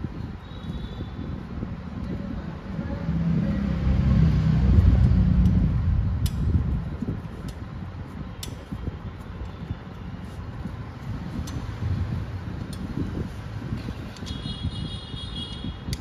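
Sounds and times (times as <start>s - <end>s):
vehicle engine passing: 3.0s - 6.9s.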